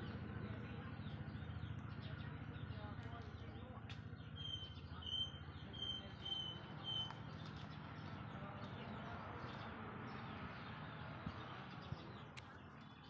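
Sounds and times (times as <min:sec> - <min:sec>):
faint outdoor noise: 0:00.0 - 0:13.0
bird calling high notes: 0:04.4 - 0:07.2.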